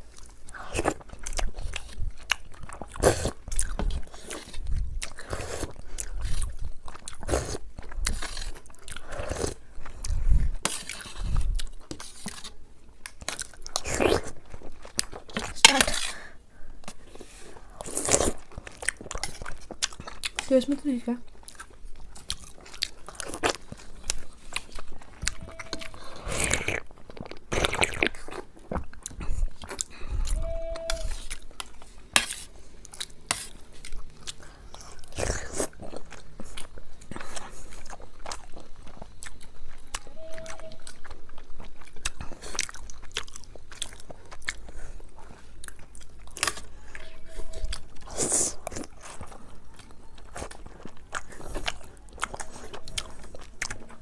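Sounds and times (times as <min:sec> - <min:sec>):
person chewing soft sweets: 0:00.0 - 0:54.0.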